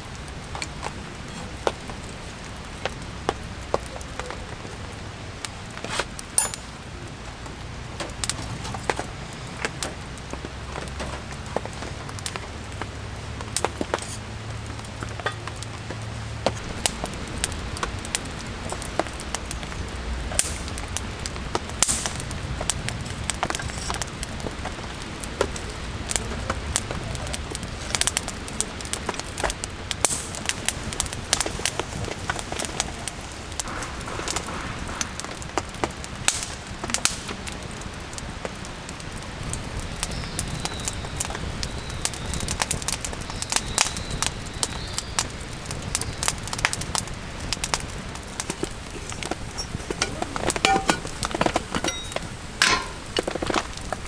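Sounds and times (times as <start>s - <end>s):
rain hissing: 0.0s - 54.0s
raindrops ticking on surfaces: 0.0s - 54.0s.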